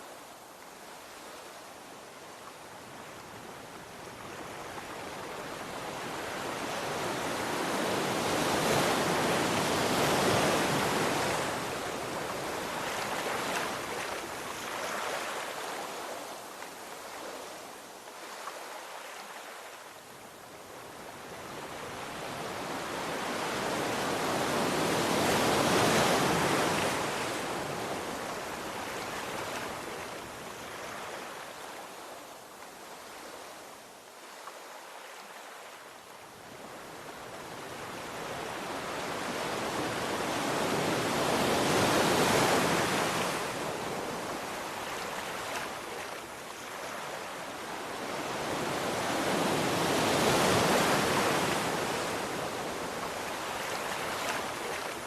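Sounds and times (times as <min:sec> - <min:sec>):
sea waves breaking on shore: 0:02.5 - 0:20.2, 0:20.8 - 0:55.0.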